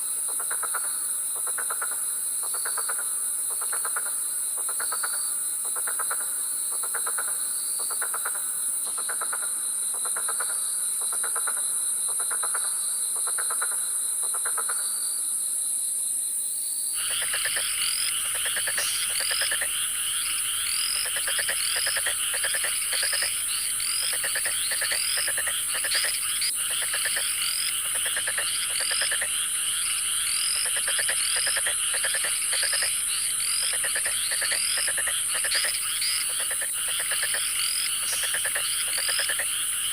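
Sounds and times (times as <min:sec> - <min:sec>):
frogs chirping quickly: 0:00.0 - 0:15.0, 0:17.0 - 0:39.9
frogs croaking: 0:00.0 - 0:15.4, 0:16.9 - 0:39.9
high insect buzz: 0:15.0 - 0:39.9.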